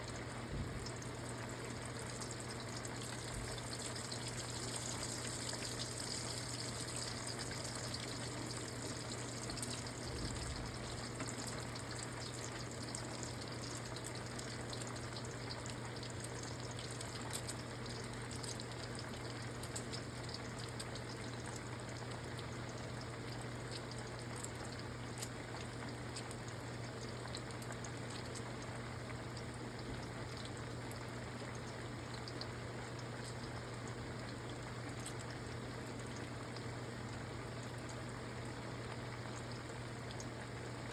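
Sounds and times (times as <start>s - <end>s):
low steady hum: 0.0s - 19.4s
food frying in hot oil: 0.0s - 40.9s.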